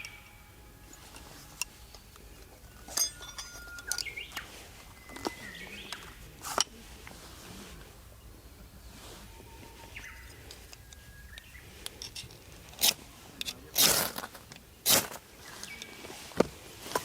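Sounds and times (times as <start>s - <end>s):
birds chirping and whistling: 0.0s - 6.4s, 8.1s - 12.3s, 15.4s - 16.4s.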